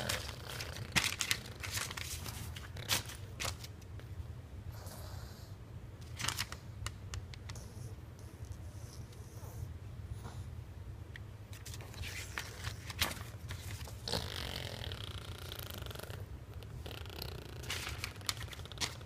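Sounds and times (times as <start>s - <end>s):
low steady hum: 0.0s - 19.0s
rustles and clicks of handling: 17.6s - 19.0s.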